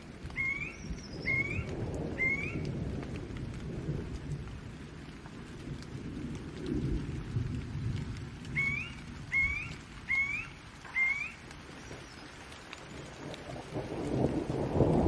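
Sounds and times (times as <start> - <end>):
distant thunder rumbling: 0.0 - 15.0
steady rain: 0.0 - 15.0
bird whistling call: 0.4 - 2.6, 8.6 - 11.4.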